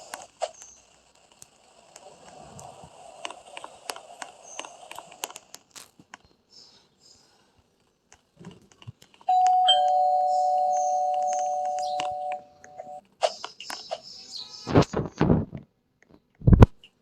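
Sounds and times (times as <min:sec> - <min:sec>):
two-tone doorbell chime: 0:09.3 - 0:13.0.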